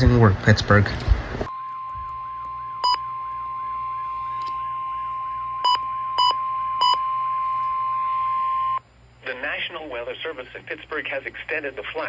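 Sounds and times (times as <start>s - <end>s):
weather radio alarm tone: 1.6s - 8.8s
short sharp beeps: 5.6s - 7.1s.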